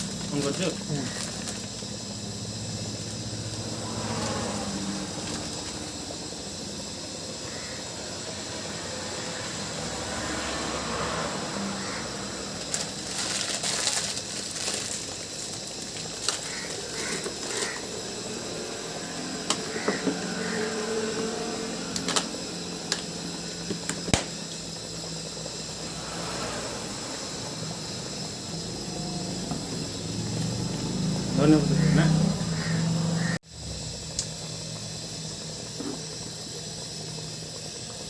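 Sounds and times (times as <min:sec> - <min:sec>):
steady hiss: 0:00.0 - 0:10.1.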